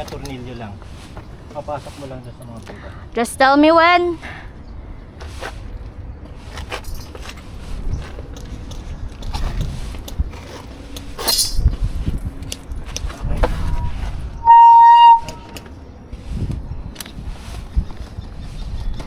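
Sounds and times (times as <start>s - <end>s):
handling clicks and rustling: 0.0s - 2.9s, 5.1s - 14.3s
electronic buzzer beep: 14.4s - 15.4s.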